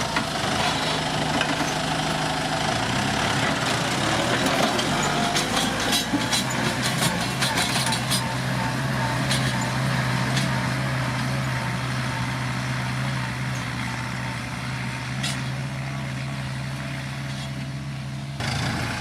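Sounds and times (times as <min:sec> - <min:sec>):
tractor diesel engine running: 0:00.0 - 0:19.0.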